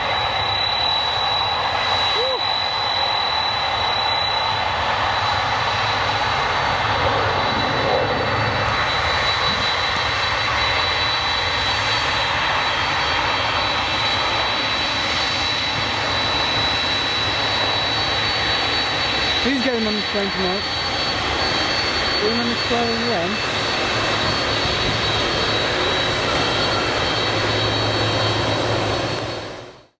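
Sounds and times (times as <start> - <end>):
high piercing jet whine: 0.0 - 29.9
jet engines rushing: 0.0 - 29.9.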